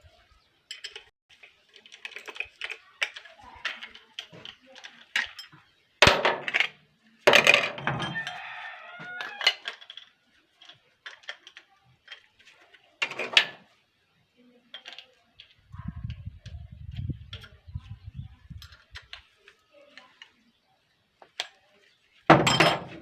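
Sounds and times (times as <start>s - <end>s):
metal pieces clanking: 1.8s - 8.4s, 9.2s - 12.3s, 13.0s - 13.6s, 22.3s - 23.0s.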